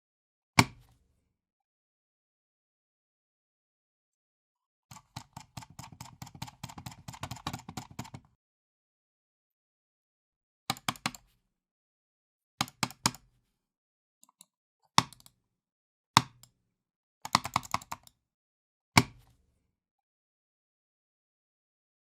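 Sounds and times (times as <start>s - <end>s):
computer mouse clicking: 4.9s - 8.3s, 10.7s - 11.3s, 14.2s - 15.4s, 17.3s - 18.1s.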